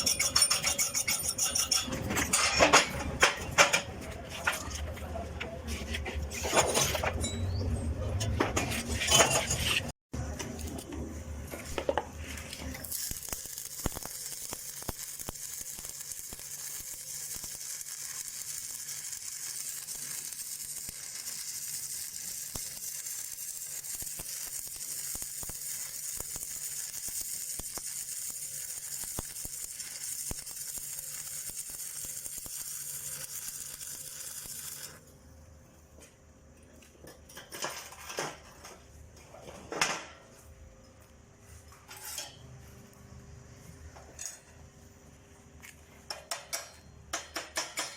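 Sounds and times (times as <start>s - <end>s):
welding arc crackling: 12.4s - 35.1s.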